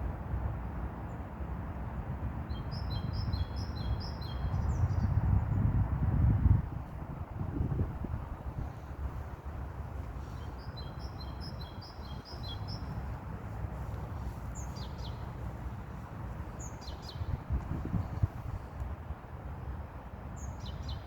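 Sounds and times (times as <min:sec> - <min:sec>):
songbird singing: 0:02.5 - 0:05.7, 0:07.7 - 0:18.9, 0:20.3 - 0:21.0.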